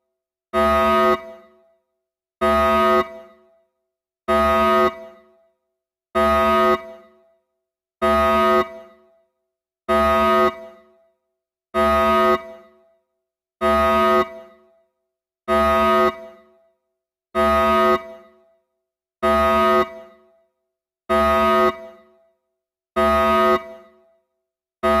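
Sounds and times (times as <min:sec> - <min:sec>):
alarm horn blasts: 0:00.6 - 0:01.7, 0:02.4 - 0:03.6, 0:04.3 - 0:05.4, 0:06.2 - 0:07.3, 0:08.0 - 0:09.1, 0:09.9 - 0:11.0, 0:11.8 - 0:12.9, 0:13.6 - 0:14.8, 0:15.5 - 0:16.6, 0:17.4 - 0:18.5, 0:19.2 - 0:20.4, 0:21.1 - 0:22.2, 0:23.0 - 0:24.1.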